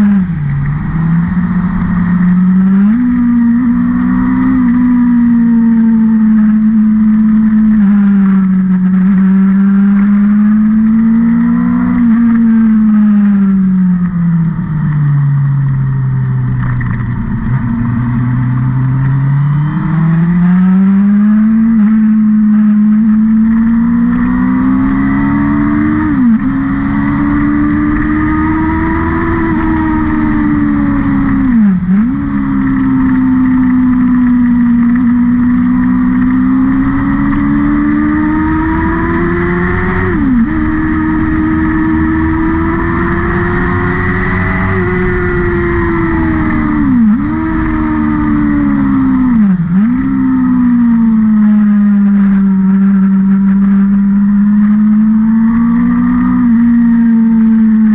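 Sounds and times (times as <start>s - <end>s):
vehicle engine revving hard: 17.7s - 57.9s.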